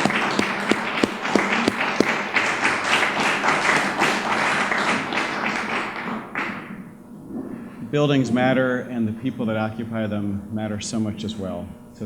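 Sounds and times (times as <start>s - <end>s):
audience applauding: 0.0s - 6.9s.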